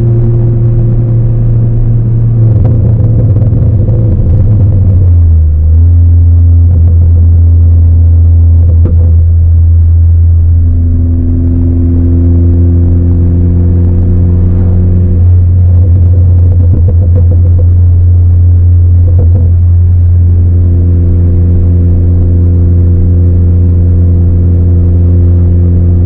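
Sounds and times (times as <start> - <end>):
car engine and exhaust droning: 0.0 - 26.0.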